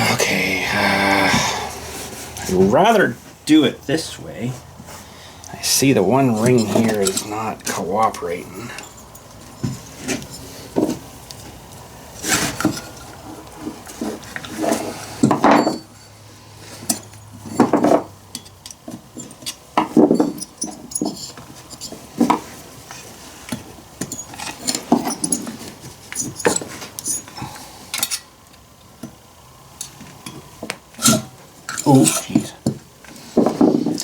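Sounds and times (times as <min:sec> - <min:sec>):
small metal parts clinking: 0:06.4 - 0:10.4, 0:14.4 - 0:16.2, 0:16.8 - 0:22.2, 0:24.0 - 0:28.3.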